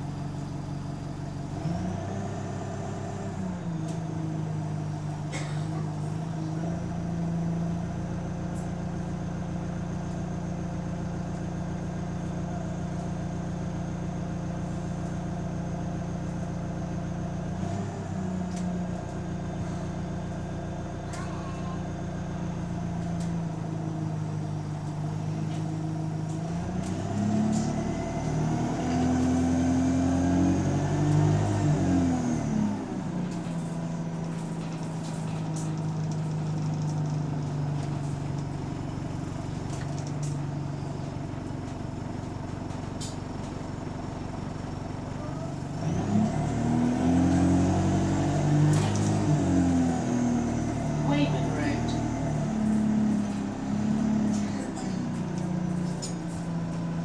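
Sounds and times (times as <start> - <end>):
bus engine and drivetrain: 0.0 - 57.0.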